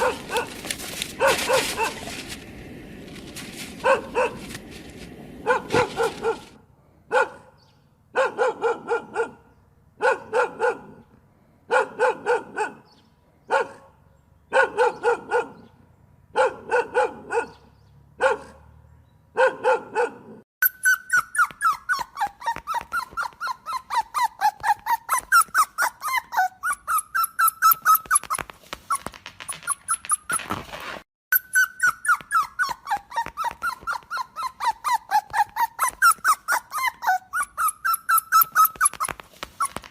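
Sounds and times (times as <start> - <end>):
dog whimpering yelps: 0.0 - 0.6, 1.2 - 2.1, 5.4 - 6.5, 19.4 - 30.5, 31.3 - 39.9
dog barking: 0.0 - 2.2, 3.8 - 4.6, 5.4 - 11.1, 11.7 - 20.4.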